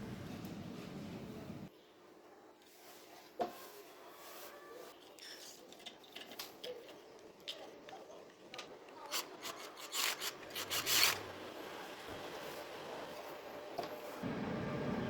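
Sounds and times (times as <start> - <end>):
filing or sanding strokes: 9.2 - 11.2.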